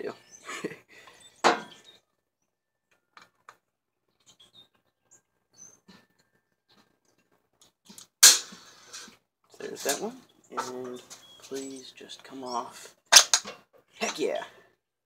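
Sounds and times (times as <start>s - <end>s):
faint bird chirps: 0.0s - 3.2s, 4.1s - 7.3s, 9.6s - 13.0s.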